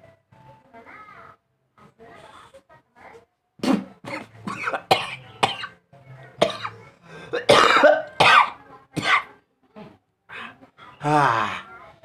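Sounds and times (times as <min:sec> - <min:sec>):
man coughing: 0:07.4 - 0:09.3.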